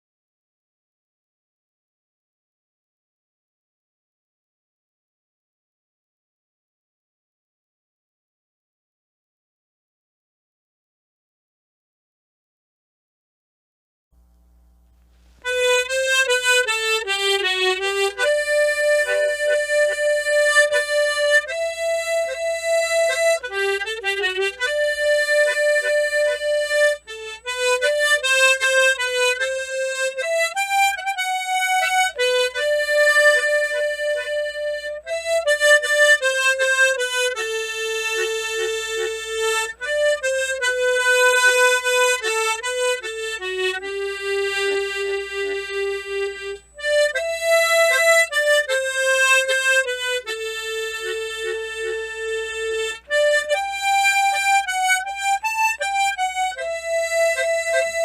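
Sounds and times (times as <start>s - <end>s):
tremolo harmonica melody: 14.2s - 58.0s.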